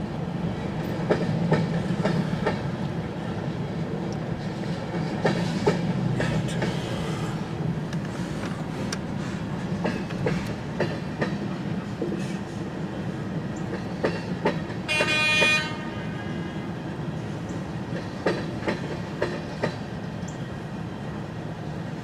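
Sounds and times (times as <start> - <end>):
train wheels clicking over rail joints: 0.8 - 2.9, 4.0 - 15.7, 17.5 - 20.4
train horn blast: 14.9 - 16.8.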